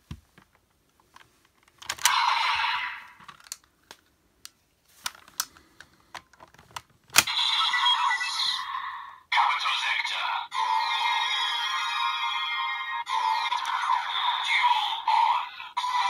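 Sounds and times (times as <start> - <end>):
toy belt electronic sound effects: 2.0 - 3.2, 7.2 - 16.0
hard plastic clicks and snaps: 3.2 - 7.3.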